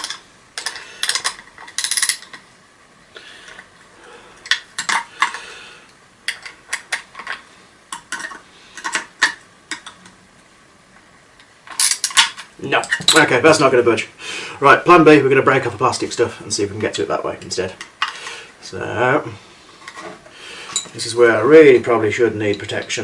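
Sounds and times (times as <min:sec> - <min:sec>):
metal tool clicking and clinking: 0:00.0 - 0:02.4.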